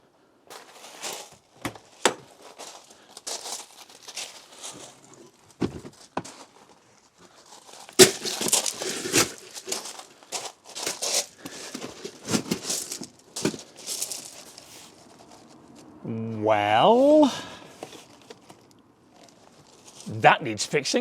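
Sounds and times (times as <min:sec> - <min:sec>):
rustling and crinkling: 0:00.5 - 0:16.0, 0:17.6 - 0:20.2
sharp knocks: 0:01.6 - 0:02.3.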